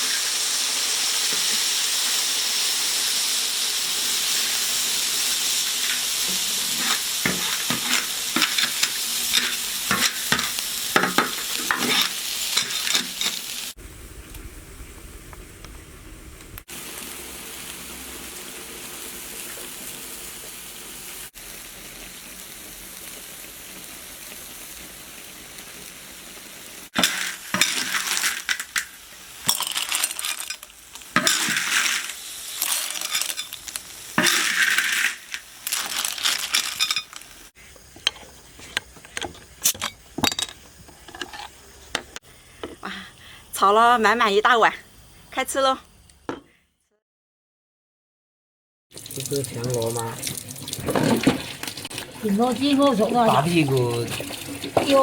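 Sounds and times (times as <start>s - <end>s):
food sizzling in a wok: 0.0s - 46.3s, 48.9s - 55.0s
shells clattering against wok: 5.7s - 13.6s, 27.0s - 37.4s.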